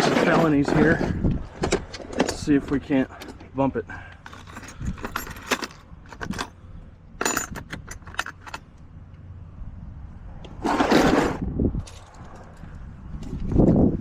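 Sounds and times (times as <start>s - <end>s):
rustling clatter: 4.2s - 8.8s, 10.5s - 13.7s
metal keys jangling: 4.3s - 6.6s, 7.2s - 8.6s.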